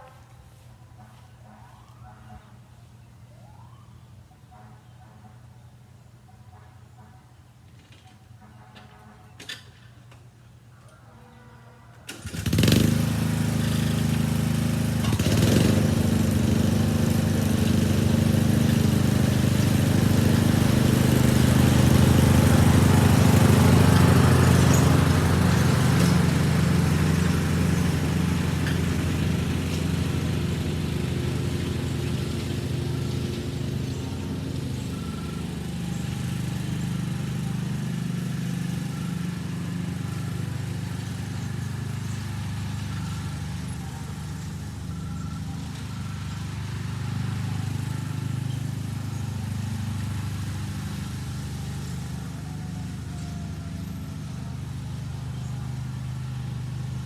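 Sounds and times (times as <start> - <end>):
riding lawn mower engine running: 12.1 - 57.0.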